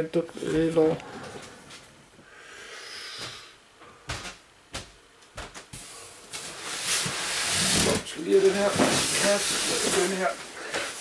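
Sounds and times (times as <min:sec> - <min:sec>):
boxes rustling: 0:05.5 - 0:11.0.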